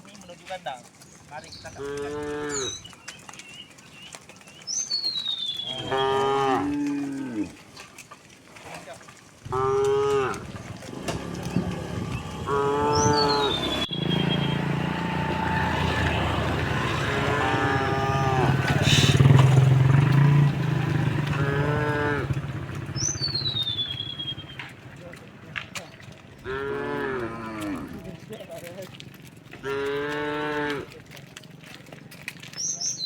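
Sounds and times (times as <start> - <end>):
cattle mooing: 1.8 - 2.7, 5.6 - 7.6, 9.4 - 23.8, 26.4 - 28.2, 29.6 - 31.1.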